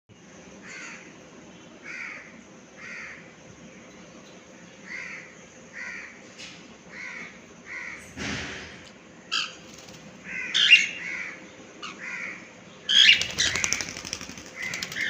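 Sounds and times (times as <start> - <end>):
cockatiels squawking: 10.4 - 11.0, 12.9 - 13.9.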